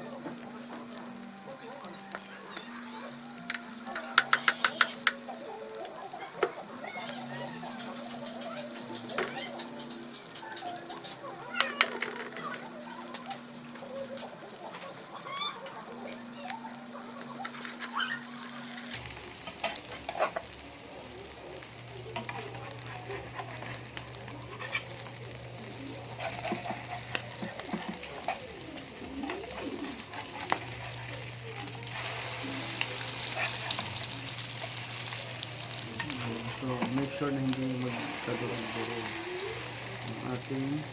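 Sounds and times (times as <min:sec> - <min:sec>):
omelet sizzling in a pan: 0:00.0 - 0:40.9
utensil clicking and scraping: 0:26.0 - 0:34.8.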